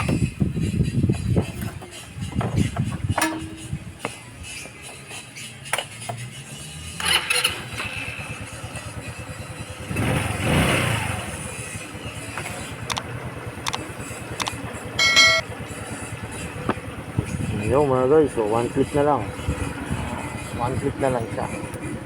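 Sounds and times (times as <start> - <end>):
scooter engine running: 6.0 - 22.0.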